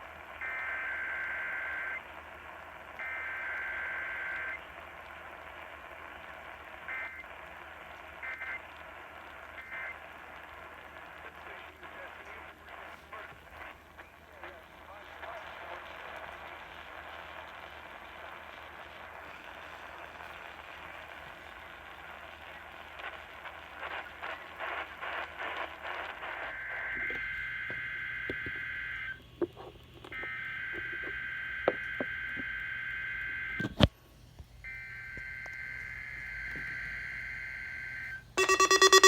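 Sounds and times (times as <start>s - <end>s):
radio static hiss: 0.0s - 33.9s
warbling two-tone data bursts: 38.4s - 39.0s.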